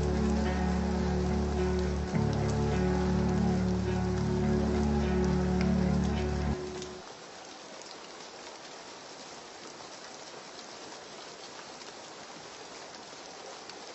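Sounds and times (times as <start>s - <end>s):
slowed reverb-heavy song: 0.0s - 7.0s
light rain falling: 0.0s - 13.9s
rain drop ticks: 0.0s - 13.9s.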